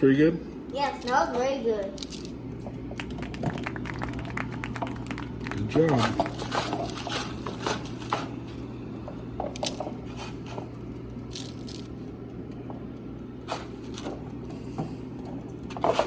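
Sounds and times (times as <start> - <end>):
steady low hum: 0.0 - 16.0
soft rustles and scrapes of crumbs: 5.8 - 12.1.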